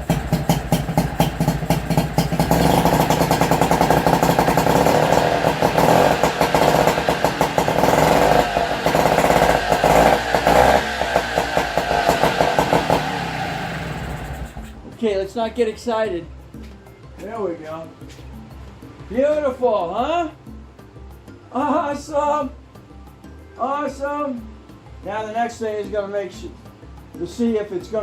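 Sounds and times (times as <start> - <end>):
outboard motor running: 0.0 - 14.9.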